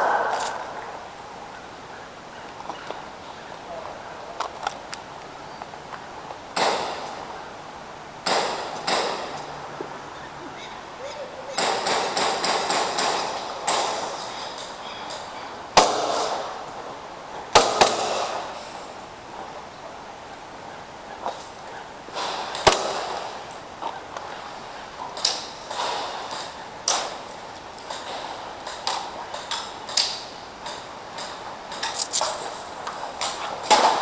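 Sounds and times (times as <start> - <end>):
airsoft pistols firing: 6.6 - 7.1, 8.2 - 9.4, 11.6 - 14.2, 15.8 - 16.6, 17.5 - 18.8, 22.2 - 23.4.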